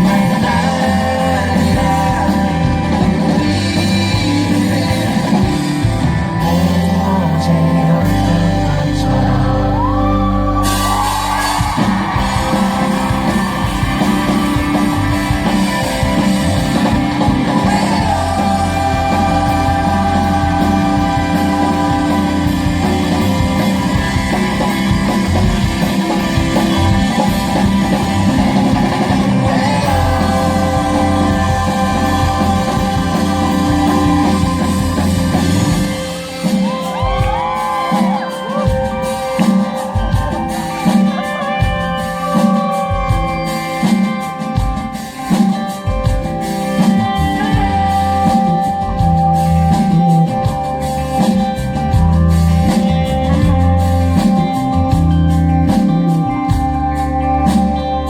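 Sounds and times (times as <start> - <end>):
lead vocal singing: 0.0 - 45.0
bass guitar: 0.0 - 58.0
drums: 0.0 - 58.0
pop-rock band playing: 0.0 - 58.0
audience shouting: 9.6 - 44.2.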